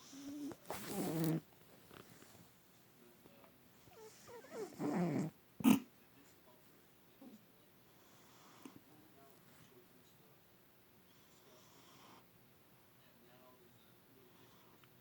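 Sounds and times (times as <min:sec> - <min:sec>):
cat snoring: 0:00.0 - 0:01.4, 0:04.0 - 0:05.8, 0:11.2 - 0:12.2
cat snorting: 0:00.0 - 0:01.5, 0:03.9 - 0:05.9.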